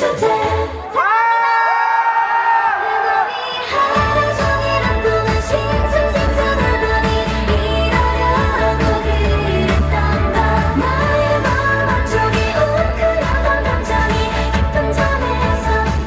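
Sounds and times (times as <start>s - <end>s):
woman singing: 0.0s - 1.0s, 2.7s - 16.0s
dance-pop song through sound system: 0.0s - 16.0s
heavy bass beat: 4.0s - 16.0s.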